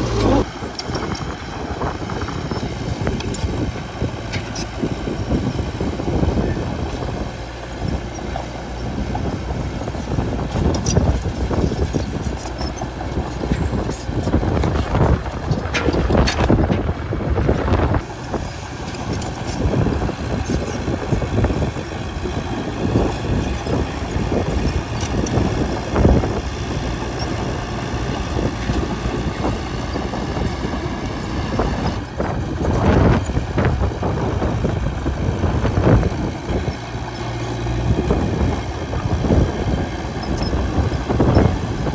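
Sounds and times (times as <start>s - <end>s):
bulldozer diesel engine running: 0.0s - 41.9s
clanks and knocks of tracks: 0.0s - 41.9s.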